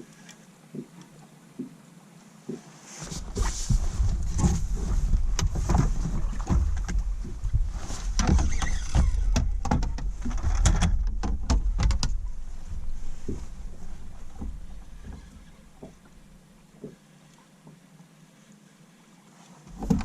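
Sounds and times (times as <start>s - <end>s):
wind buffeting microphone: 3.2s - 16.4s
handling knocks and taps: 3.4s - 17.0s.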